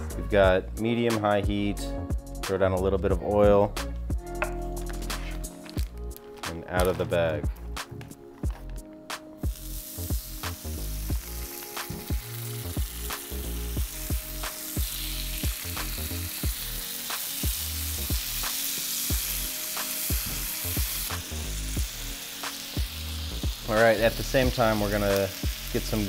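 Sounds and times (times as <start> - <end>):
meat sizzling on a griddle: 9.4 - 26.0.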